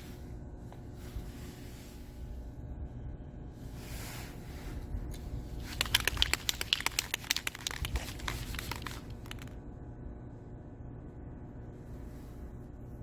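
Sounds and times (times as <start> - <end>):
crinkling and crackling: 5.6 - 9.6.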